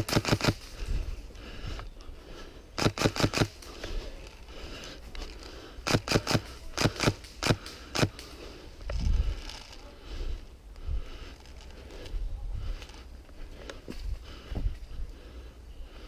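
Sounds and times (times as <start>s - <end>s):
airsoft rifle shots: 0.0s - 0.7s, 2.8s - 3.6s, 5.9s - 8.2s.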